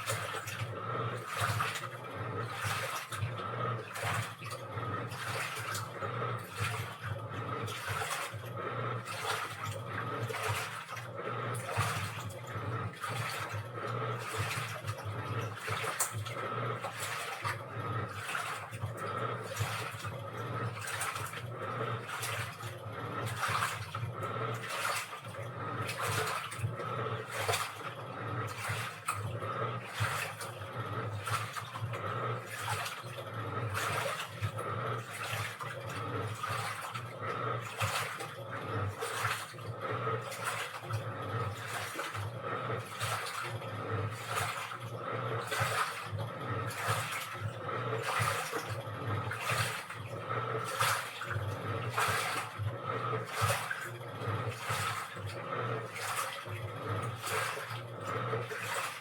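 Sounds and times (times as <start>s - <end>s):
water sloshing in washing machine: 0.0s - 59.0s.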